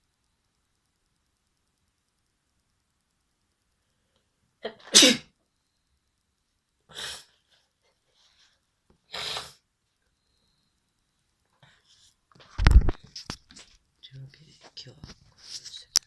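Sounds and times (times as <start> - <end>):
person sneezing: 4.6 - 5.3, 9.1 - 9.6.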